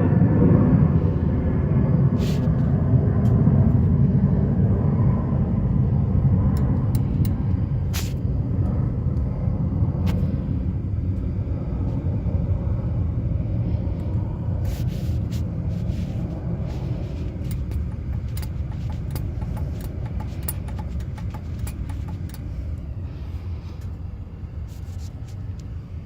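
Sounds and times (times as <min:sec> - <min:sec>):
car road noise rumble: 0:00.0 - 0:26.0
brake clicks: 0:17.1 - 0:22.5.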